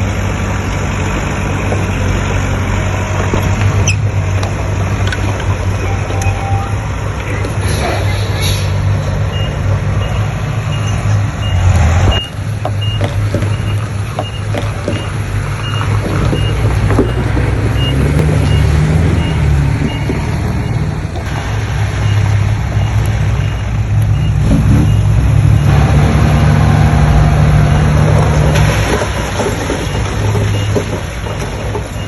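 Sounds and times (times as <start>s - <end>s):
diesel machinery engine: 0.0s - 32.0s
reversing alarm beeping: 4.9s - 8.1s, 9.3s - 21.4s, 22.0s - 26.8s.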